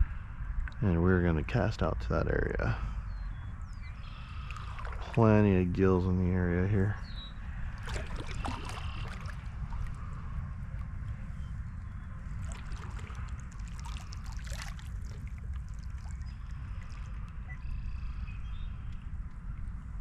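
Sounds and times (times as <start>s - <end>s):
steady low rumble: 0.0s - 20.0s
water splashing around kayak: 4.1s - 5.8s, 7.5s - 11.2s, 12.1s - 17.8s.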